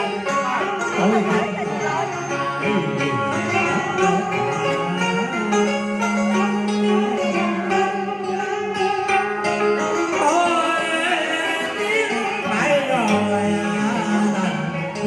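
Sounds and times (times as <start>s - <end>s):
person singing ornamented melody: 0.0s - 8.4s, 10.1s - 15.0s
instrumental accompaniment: 0.0s - 15.0s.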